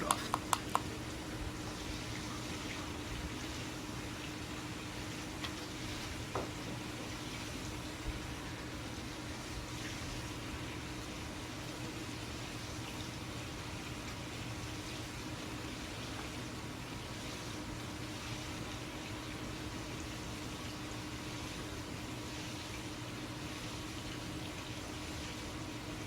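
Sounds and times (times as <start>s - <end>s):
light clicks: 0.0s - 0.9s.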